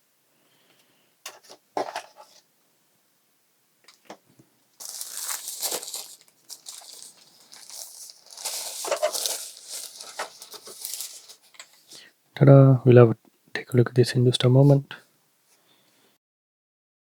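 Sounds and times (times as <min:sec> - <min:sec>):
packaging crinkling and rustling: 0:04.8 - 0:12.0.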